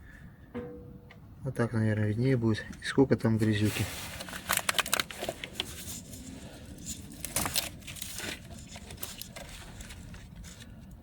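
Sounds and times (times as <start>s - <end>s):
plastic conduit crinkling: 2.7s - 11.0s.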